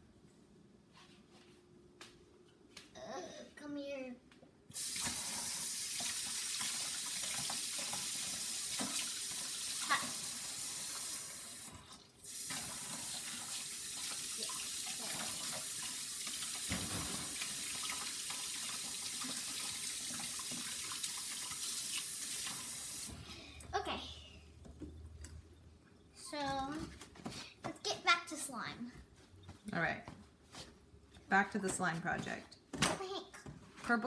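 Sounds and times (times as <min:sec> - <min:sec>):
tap water running into sink: 0:04.8 - 0:23.2.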